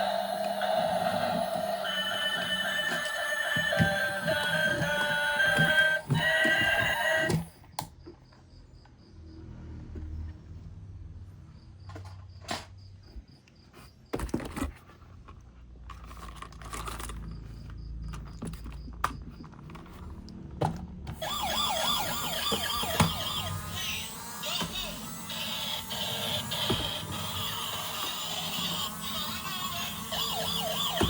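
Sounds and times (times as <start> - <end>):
yelping emergency vehicle siren: 0.0 - 7.4, 21.2 - 31.0.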